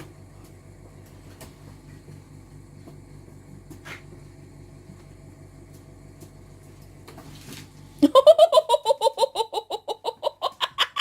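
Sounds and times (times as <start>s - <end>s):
person laughing hard: 8.0s - 11.0s.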